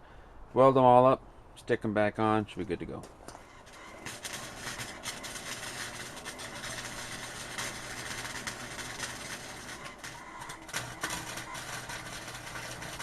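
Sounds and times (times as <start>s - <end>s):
man talking: 0.5s - 3.1s
welding arc crackling: 3.3s - 13.0s.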